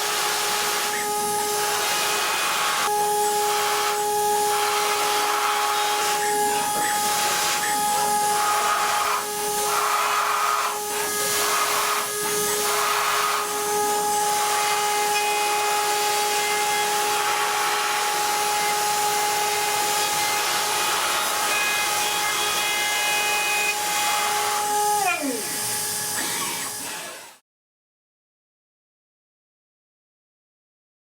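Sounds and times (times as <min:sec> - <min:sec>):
milling spindle whine: 0:00.0 - 0:27.1
cutter hissing on metal: 0:00.0 - 0:27.4.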